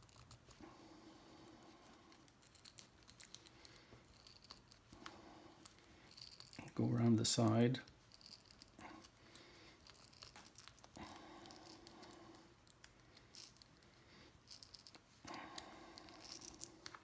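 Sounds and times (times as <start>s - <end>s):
adhesive crackling and clicks: 7.4s - 13.8s.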